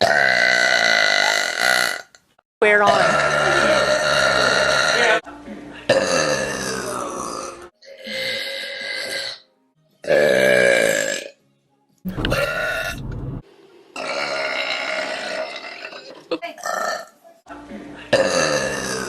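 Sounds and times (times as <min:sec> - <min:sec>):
women burping: 0:00.0 - 0:02.0, 0:02.8 - 0:05.2, 0:05.9 - 0:09.4, 0:18.1 - 0:19.0.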